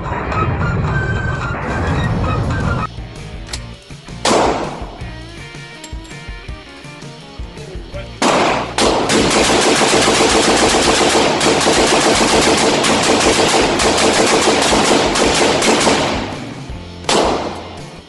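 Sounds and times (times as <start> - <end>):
rapid gunshots: 4.2 - 5.0, 8.2 - 18.0.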